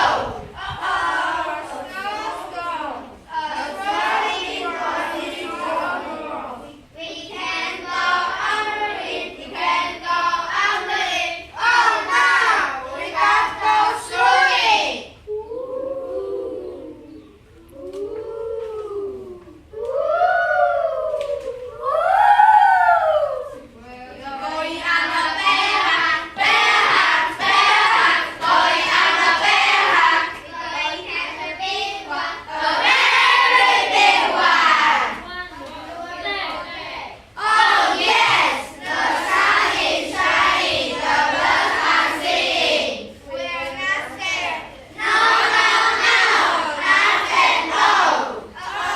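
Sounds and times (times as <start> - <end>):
children chanting: 0.0 - 17.2, 24.2 - 48.9
children's wavering hooo calls: 15.2 - 23.8.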